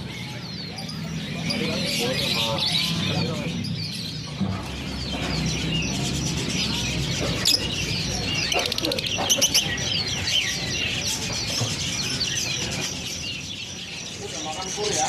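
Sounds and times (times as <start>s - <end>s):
songbirds chirping and twittering: 0.0s - 15.0s.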